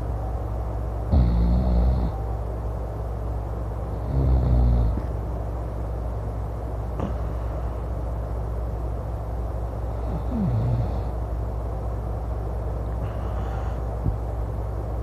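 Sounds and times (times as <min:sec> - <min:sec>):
man snoring loudly: 0:01.1 - 0:02.2, 0:04.0 - 0:05.0, 0:10.0 - 0:11.1.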